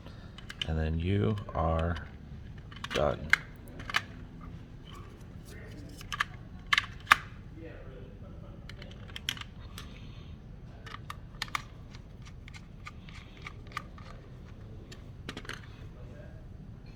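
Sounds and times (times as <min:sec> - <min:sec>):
low steady hum: 0:00.0 - 0:16.9
plastic parts clicking: 0:00.2 - 0:07.3, 0:08.7 - 0:10.0, 0:10.8 - 0:15.9.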